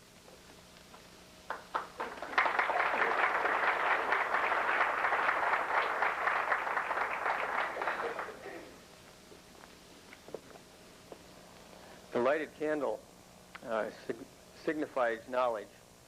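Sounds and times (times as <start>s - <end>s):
audience applauding: 1.5s - 8.7s.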